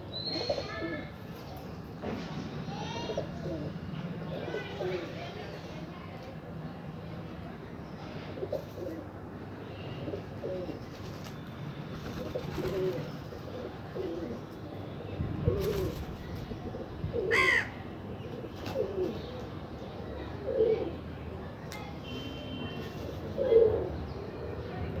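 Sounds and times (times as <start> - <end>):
pigeon cooing: 10.1 - 10.8, 12.2 - 14.4, 15.4 - 17.7, 18.3 - 19.3, 20.4 - 21.0, 23.3 - 24.0.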